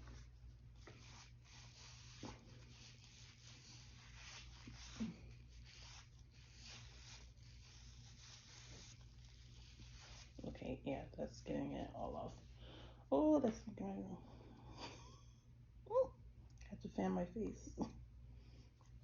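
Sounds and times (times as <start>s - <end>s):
makeup wipe rubbing skin: 0.0s - 12.3s
low steady hum: 0.0s - 19.0s.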